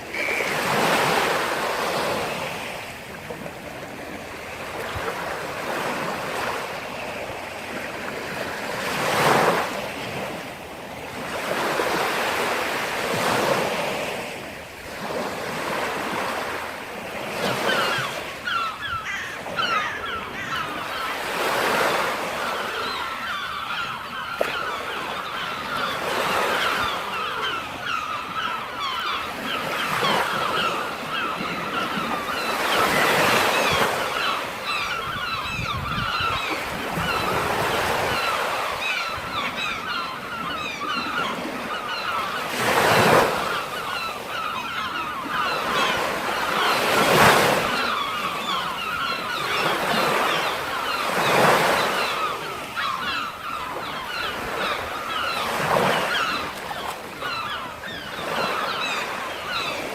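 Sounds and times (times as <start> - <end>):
waves breaking on shore: 0.0 - 59.9
birds chattering: 17.3 - 59.9.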